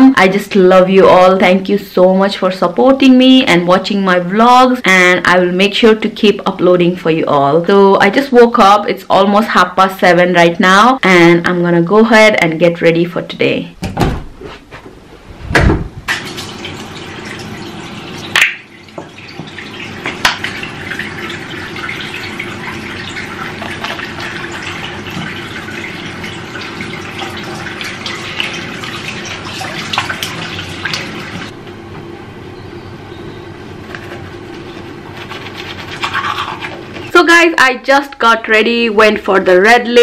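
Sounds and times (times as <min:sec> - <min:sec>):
knocks: 0:13.8 - 0:14.3
tap running into sink: 0:18.2 - 0:22.0, 0:23.0 - 0:25.8.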